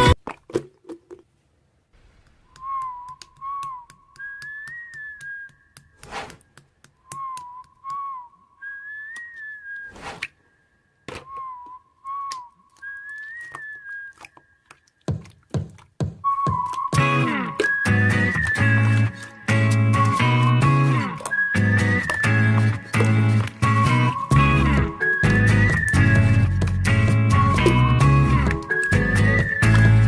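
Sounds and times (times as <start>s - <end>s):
whistled melody: 2.4s - 6.0s, 7.0s - 14.6s, 16.2s - 30.0s
thumps: 15.0s - 18.6s.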